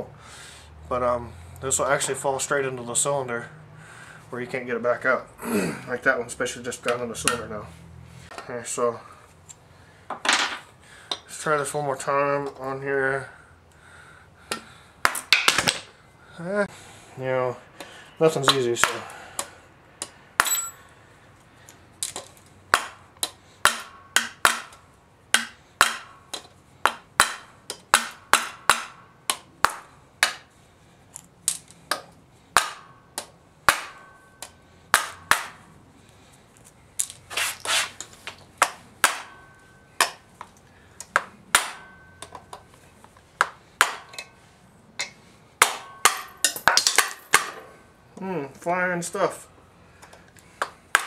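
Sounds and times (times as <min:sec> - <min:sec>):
hammer striking metal tool: 0:23.6 - 0:30.4, 0:32.6 - 0:35.6, 0:41.2 - 0:42.6, 0:45.0 - 0:47.7.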